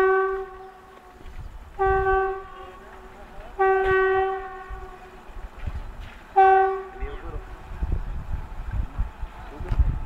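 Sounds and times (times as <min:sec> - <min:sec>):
locomotive horn short blasts: 0:00.0 - 0:01.0, 0:01.8 - 0:02.8, 0:03.6 - 0:05.1, 0:06.4 - 0:07.2.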